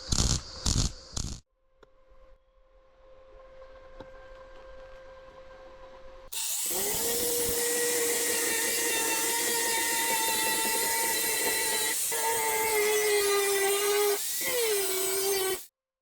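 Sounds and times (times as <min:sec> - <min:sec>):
angle grinder grinding steel: 0:06.3 - 0:15.7.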